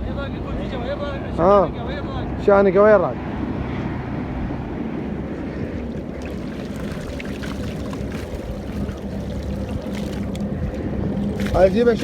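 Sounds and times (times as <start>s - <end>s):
boat motor hum: 0.0s - 12.0s
water splashing along hull: 3.4s - 12.0s.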